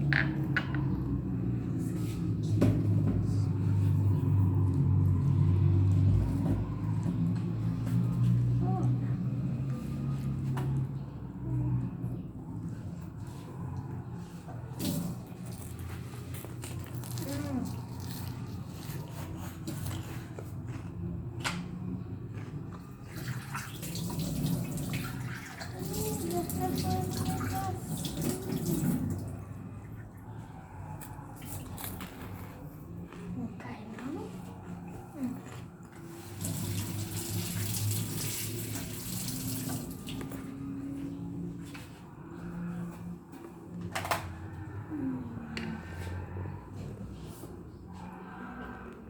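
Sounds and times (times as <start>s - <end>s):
liquid running: 23.2s - 29.4s, 36.1s - 40.3s.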